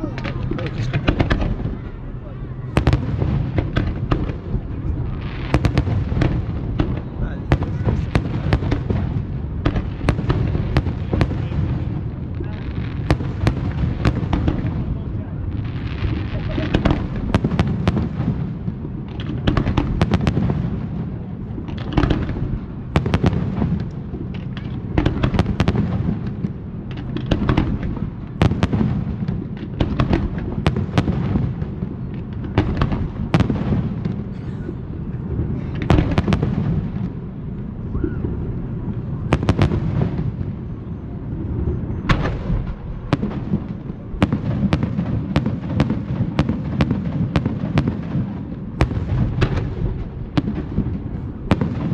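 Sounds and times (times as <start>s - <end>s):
fireworks banging: 0.0s - 51.9s.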